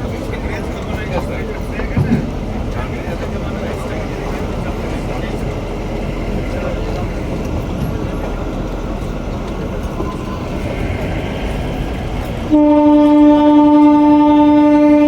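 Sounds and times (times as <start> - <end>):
train running on track: 0.0 - 15.0
train horn blast: 12.5 - 15.0.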